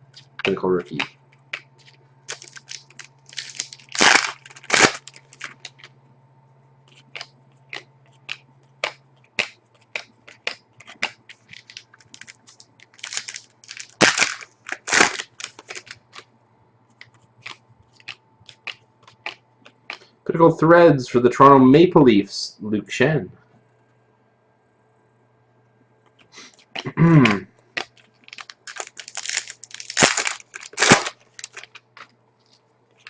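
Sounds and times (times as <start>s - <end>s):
faint electrical hum: 0.0s - 33.0s
cards clicking and snapping: 0.1s - 5.9s, 6.9s - 16.3s, 16.9s - 20.1s, 26.1s - 33.0s
card packs rustling: 1.8s - 5.9s, 9.8s - 16.3s, 17.0s - 20.1s, 27.8s - 33.0s.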